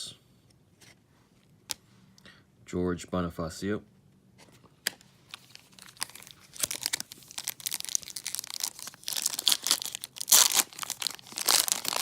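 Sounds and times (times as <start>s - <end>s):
foil wrapper crinkling and tearing: 5.3s - 12.0s.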